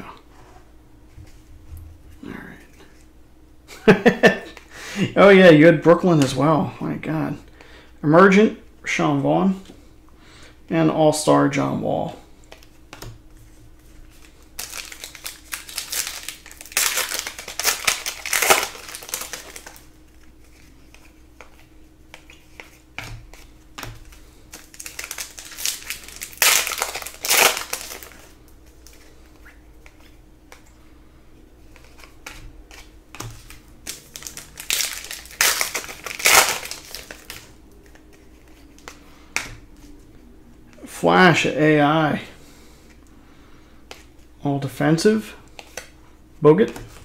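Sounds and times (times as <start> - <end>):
wrappers torn and crumpled: 14.1 - 20.7, 23.3 - 29.0, 31.7 - 39.0.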